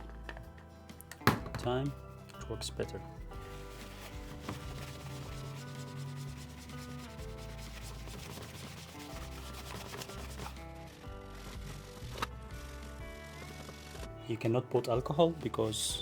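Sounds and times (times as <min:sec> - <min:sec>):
background music: 0:00.0 - 0:16.0
cloth rubbing plastic: 0:01.8 - 0:11.8.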